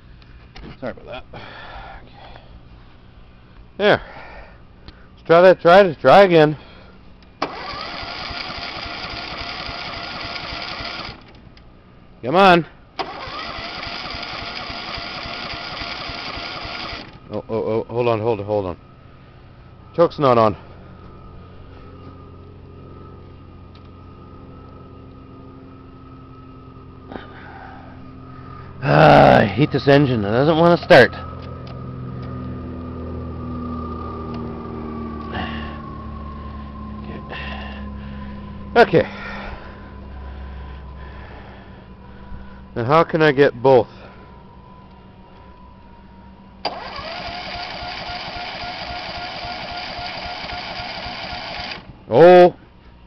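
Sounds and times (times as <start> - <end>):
low mechanical hum: 0.0 - 53.0
electric starter cranking engine: 7.4 - 11.5, 13.0 - 17.3, 46.6 - 52.0.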